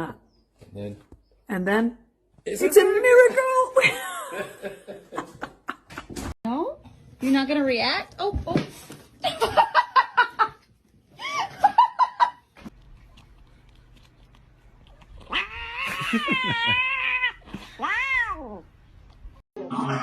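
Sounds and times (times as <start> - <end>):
cat meowing: 15.2 - 18.6
cat yowling: 15.2 - 18.6.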